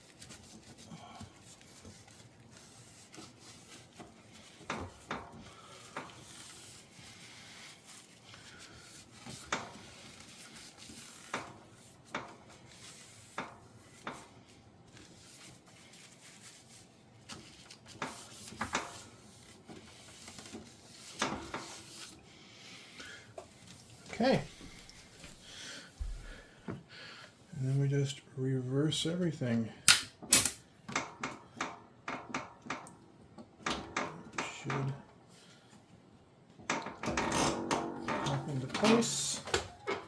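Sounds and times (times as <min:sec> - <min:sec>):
paper napkin wiping a panel: 0:00.0 - 0:22.9.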